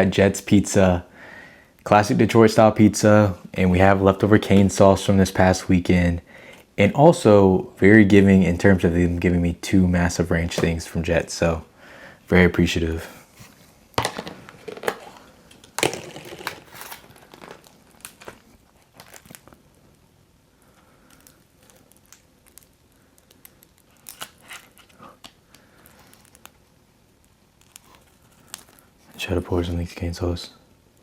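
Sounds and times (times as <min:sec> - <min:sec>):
food packaging crinkling: 0:14.0 - 0:20.0, 0:20.6 - 0:29.2.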